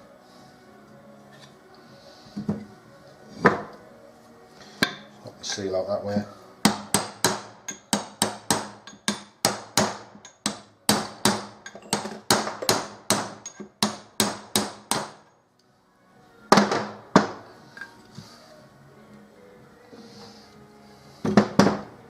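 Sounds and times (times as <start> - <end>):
hammer striking metal: 6.6 - 15.3.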